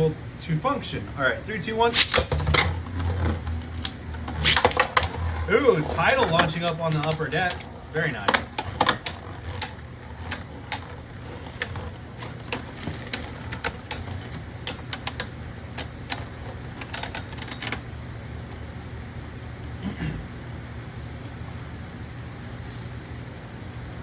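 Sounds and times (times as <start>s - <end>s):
spinning tops clacking together: 1.9s - 17.8s.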